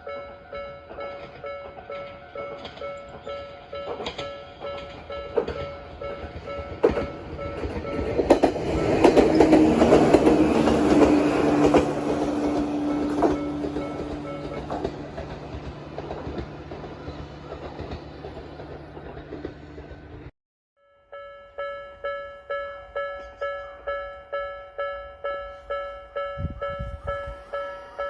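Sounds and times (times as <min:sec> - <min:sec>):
level crossing warning bell ringing: 0:00.0 - 0:15.3, 0:20.8 - 0:28.0
train wheels clacking over rail joints: 0:00.8 - 0:20.3.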